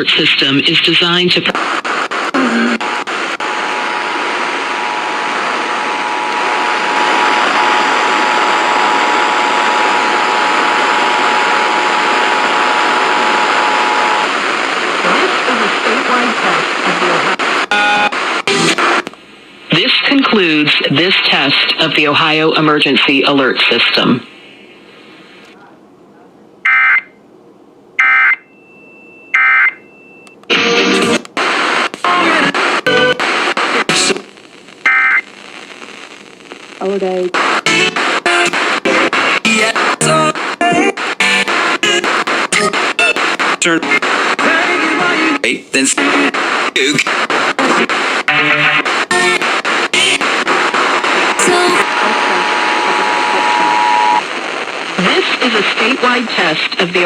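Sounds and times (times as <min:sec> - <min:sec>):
radio static hiss: 0:00.0 - 0:26.3, 0:30.5 - 0:57.0
two-tone alert signal: 0:28.2 - 0:30.2.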